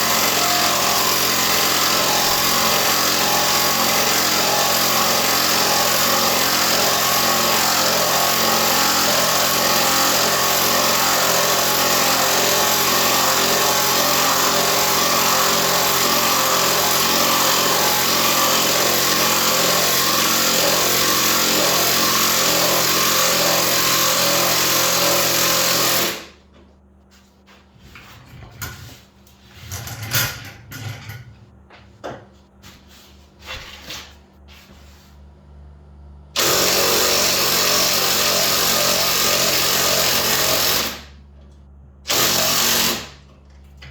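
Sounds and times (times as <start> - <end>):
power tool motor running: 0.0 - 26.3, 36.4 - 41.1, 42.1 - 43.2.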